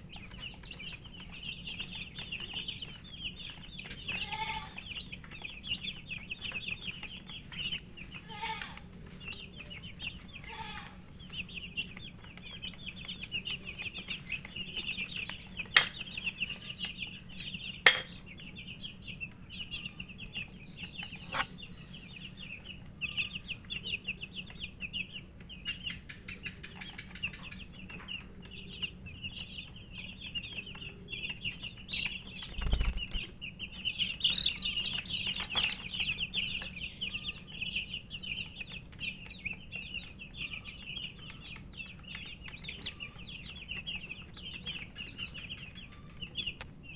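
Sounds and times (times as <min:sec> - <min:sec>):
chicks peeping: 0:00.0 - 0:46.9.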